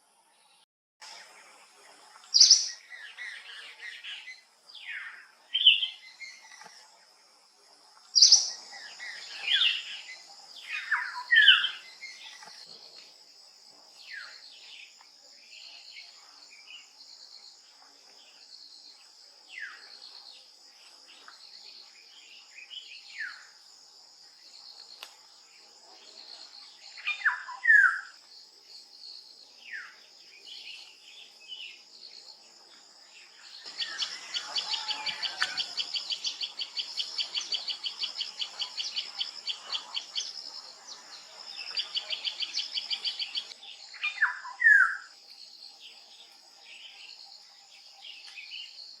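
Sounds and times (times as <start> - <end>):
high insect drone: 1.2 - 49.0
wild birds calling: 33.4 - 45.1.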